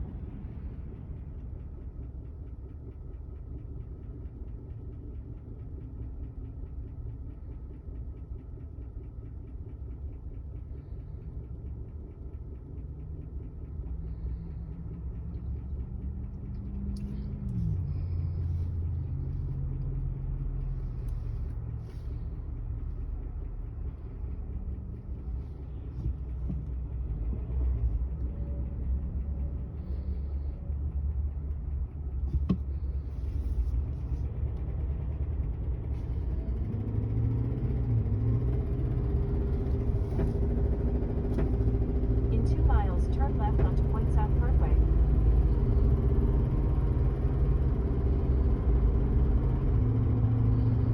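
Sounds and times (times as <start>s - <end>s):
truck engine rumbling: 0.0s - 50.9s
engine tone climbing: 12.5s - 50.9s.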